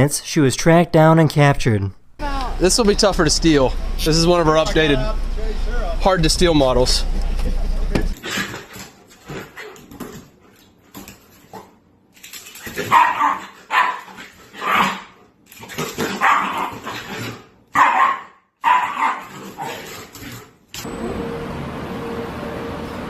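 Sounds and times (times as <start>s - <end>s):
dog barking: 12.9s - 15.2s, 16.1s - 17.0s, 17.7s - 19.8s.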